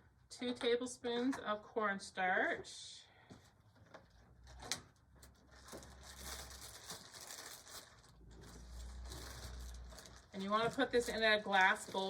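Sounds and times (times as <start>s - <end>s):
soft scraping and rustling: 3.3s - 12.0s.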